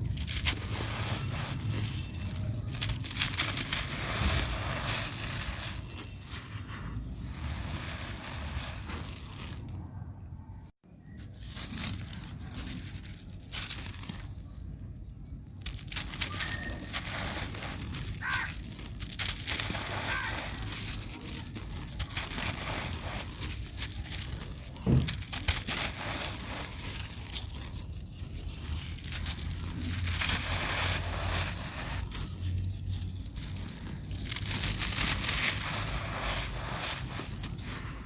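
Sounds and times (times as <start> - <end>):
cement crumbling crunches: 0.0 - 9.9, 11.0 - 38.0
loud cracks: 16.9 - 24.1.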